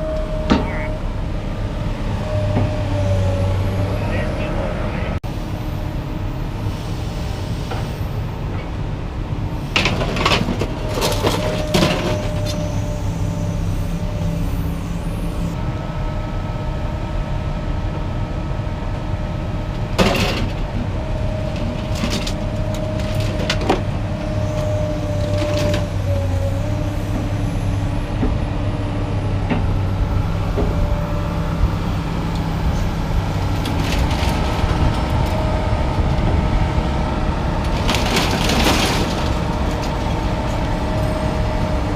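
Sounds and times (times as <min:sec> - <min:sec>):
heavy machine engine running: 0:00.0 - 0:41.9
metal scrap clanking and banging: 0:09.8 - 0:12.6, 0:20.0 - 0:20.7, 0:37.7 - 0:40.6.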